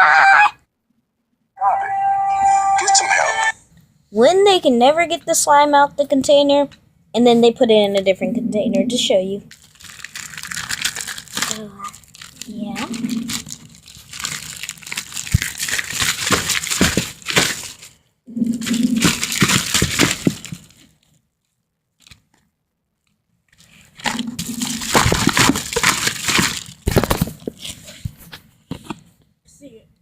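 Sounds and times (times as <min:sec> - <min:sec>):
slime crackling in plastic container: 0:09.5 - 0:21.1, 0:23.5 - 0:28.0.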